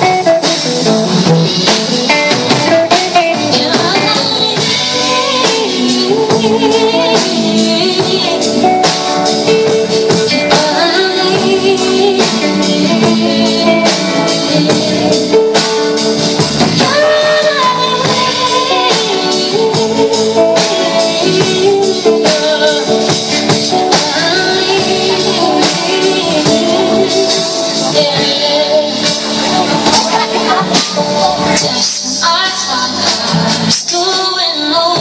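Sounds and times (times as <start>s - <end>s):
live band playing pop: 0.0s - 35.0s
person singing: 0.0s - 35.0s
steady percussion beat: 28.9s - 32.0s.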